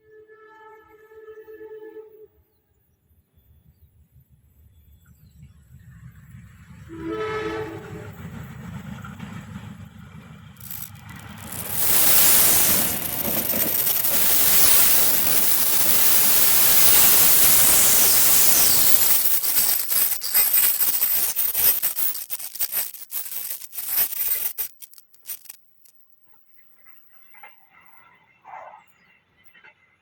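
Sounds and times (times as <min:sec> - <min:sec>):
train rushing past: 0:06.1 - 0:18.8
train wheels clicking and clattering: 0:07.9 - 0:25.5.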